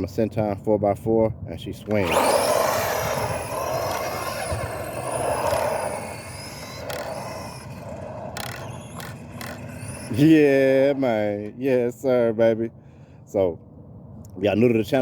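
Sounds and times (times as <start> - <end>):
electric motor high whine: 1.8 - 11.6.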